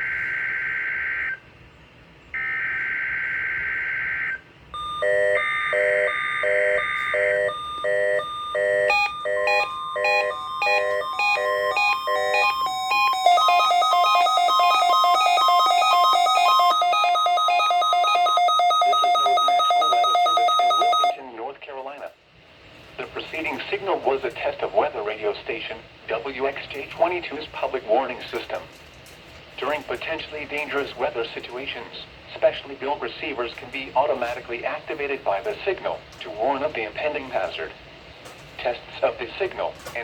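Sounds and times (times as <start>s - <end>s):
steady warning alarm tone: 0.0s - 1.4s, 2.4s - 21.3s
multi-tone alarm sound: 2.4s - 21.3s
pulsed electronic beeps: 4.8s - 21.2s.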